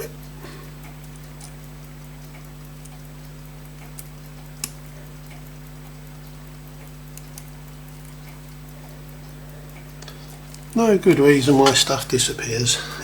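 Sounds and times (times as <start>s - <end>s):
steady electrical hum: 0.0s - 13.0s
tweezers clicking on watch parts: 0.8s - 10.9s.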